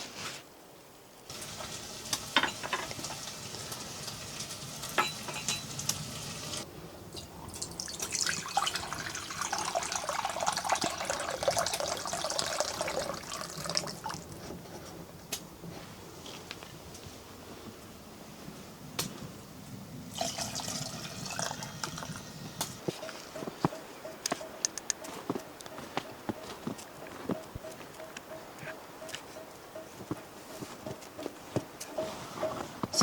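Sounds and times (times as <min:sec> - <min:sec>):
water being poured: 0:01.3 - 0:06.6, 0:07.2 - 0:14.4, 0:20.1 - 0:22.8.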